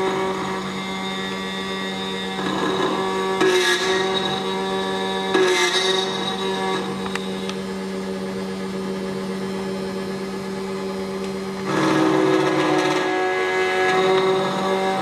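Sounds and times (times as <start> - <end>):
key cutting machine milling metal: 0.0 - 8.3, 11.5 - 15.0.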